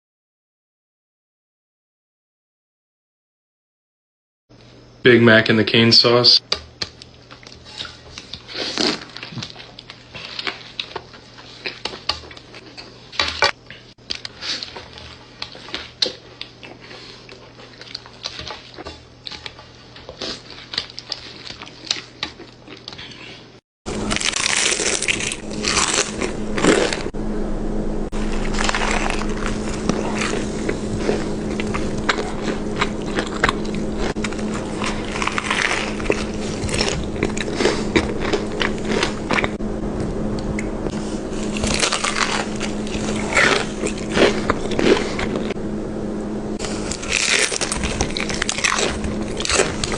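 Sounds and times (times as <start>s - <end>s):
chewing and crunching: 6.8s - 27.1s, 28.1s - 39.6s, 40.5s - 45.6s, 46.6s - 49.9s
steady hum: 23.9s - 49.9s.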